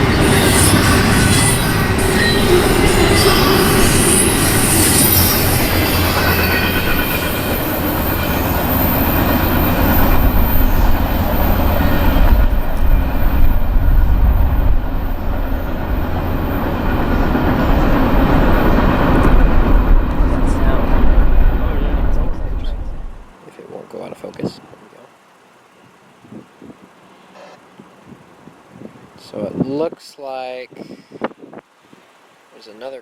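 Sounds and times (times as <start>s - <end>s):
train wheels squealing: 0.0s - 13.6s
freight train rumbling on rails: 0.0s - 23.4s.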